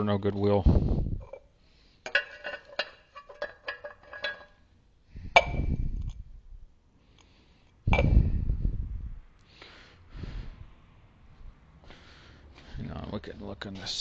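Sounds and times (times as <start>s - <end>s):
metal tools clinking: 2.1s - 4.6s
metallic knock with thud: 5.4s - 5.8s.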